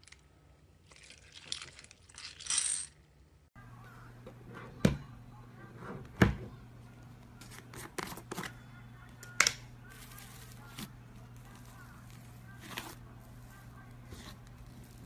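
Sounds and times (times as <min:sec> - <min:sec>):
steady low hum: 0:03.6 - 0:15.0.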